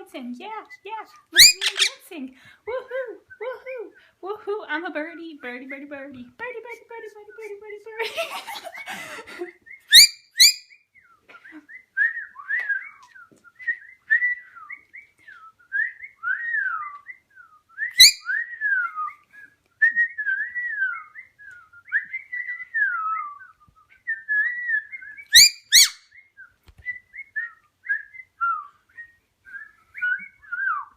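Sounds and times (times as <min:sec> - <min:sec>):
parrot whistling: 0:01.4 - 0:01.9, 0:09.9 - 0:10.8, 0:17.9 - 0:19.0, 0:24.1 - 0:26.2
parrot sharp chirps: 0:01.4 - 0:02.0, 0:09.9 - 0:10.8, 0:18.0 - 0:18.3, 0:25.3 - 0:26.0.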